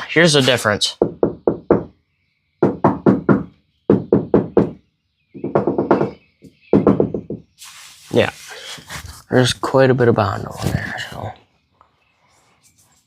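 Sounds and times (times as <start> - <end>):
knuckles knocking on sheet metal: 1.0 - 2.0, 2.6 - 7.5.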